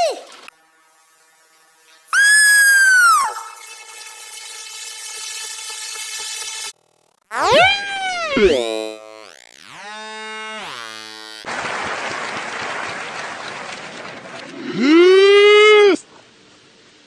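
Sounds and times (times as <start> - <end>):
loud held tone with overtones: 2.0 - 4.1
hissing noise: 2.0 - 6.7.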